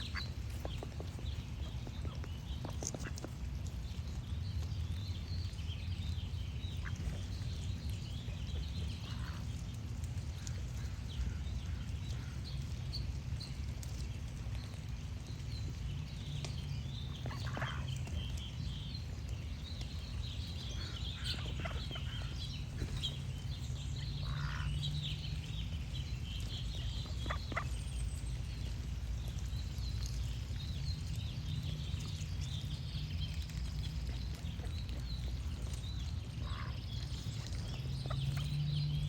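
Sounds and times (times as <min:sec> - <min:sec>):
songbirds chirping: 0:00.0 - 0:39.0
ducks quacking: 0:20.8 - 0:22.4, 0:24.2 - 0:24.8, 0:26.8 - 0:27.8.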